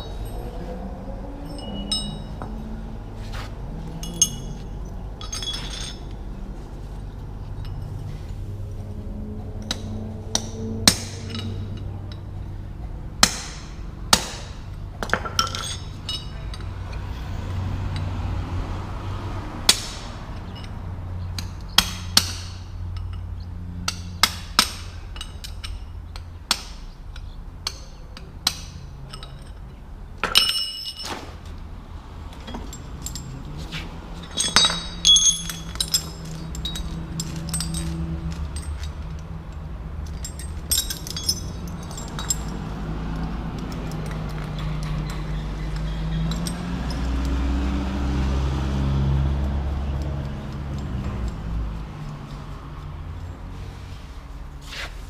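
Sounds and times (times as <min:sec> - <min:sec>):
metal tools clinking: 0:01.4 - 0:02.7, 0:03.3 - 0:13.9, 0:14.5 - 0:18.2, 0:19.7 - 0:31.7, 0:32.3 - 0:47.8, 0:49.6 - 0:53.6.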